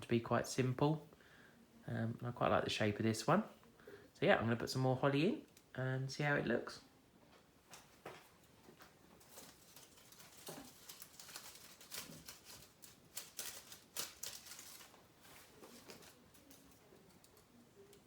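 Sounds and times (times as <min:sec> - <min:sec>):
rustling and crackling of holly sprigs: 0:07.7 - 0:18.0
light clicks of leaves and stems: 0:08.8 - 0:18.0.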